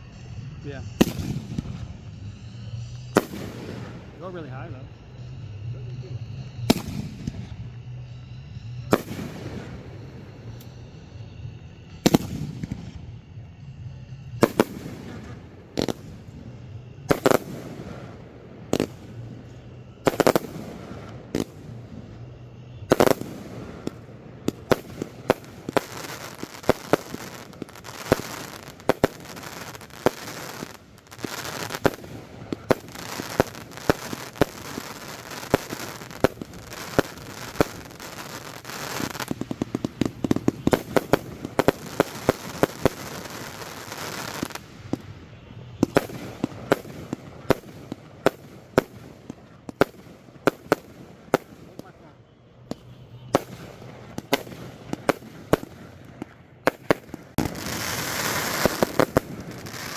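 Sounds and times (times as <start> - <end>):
fireworks shells bursting: 0.0 - 52.1, 52.7 - 59.9
fireworks crackle: 0.0 - 59.9.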